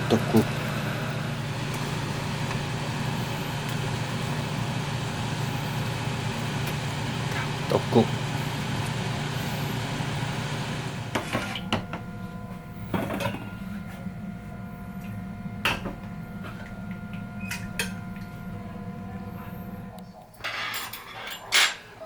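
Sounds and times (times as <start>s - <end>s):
steady low hum: 0.0s - 20.4s
dishes and utensils clinking: 20.4s - 22.0s.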